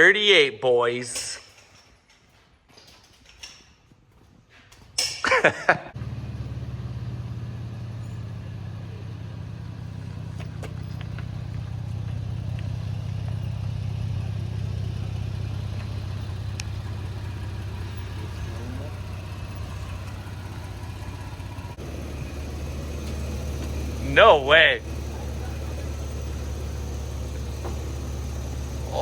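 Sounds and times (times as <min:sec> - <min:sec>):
pickup engine starting and idling: 0:05.9 - 0:29.0.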